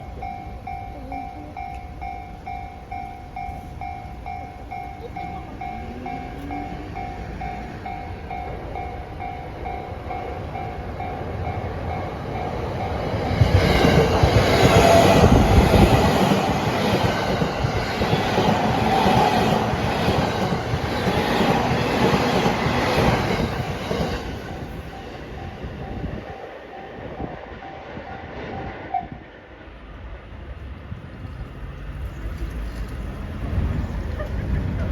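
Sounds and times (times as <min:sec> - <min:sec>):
level crossing bell ringing: 0:00.0 - 0:13.2
train passing: 0:00.0 - 0:34.9.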